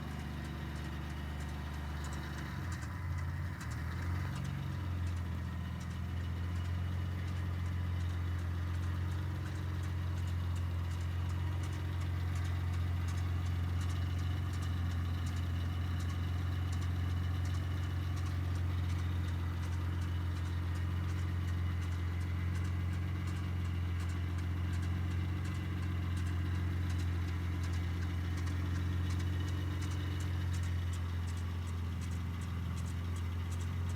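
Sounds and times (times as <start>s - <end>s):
car engine idling: 0.0s - 33.9s
faint regular ticking: 7.3s - 33.9s.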